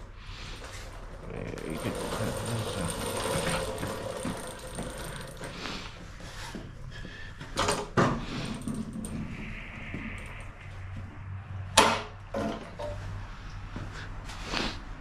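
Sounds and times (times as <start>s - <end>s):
clicks and rattles: 1.5s - 6.3s.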